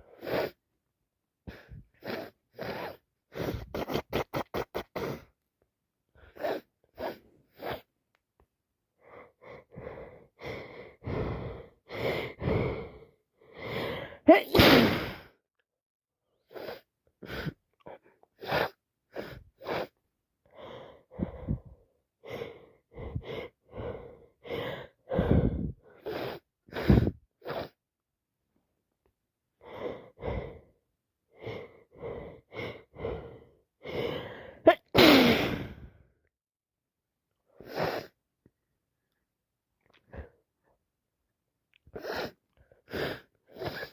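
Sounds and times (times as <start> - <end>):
gasping breaths: 9.0 - 14.4, 16.4 - 27.8, 29.6 - 36.1, 41.9 - 43.9
person sneezing: 14.3 - 15.3, 34.7 - 35.8.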